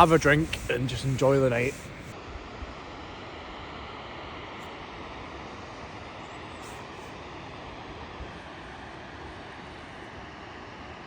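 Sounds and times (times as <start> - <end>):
waterfall roaring: 0.0 - 2.1.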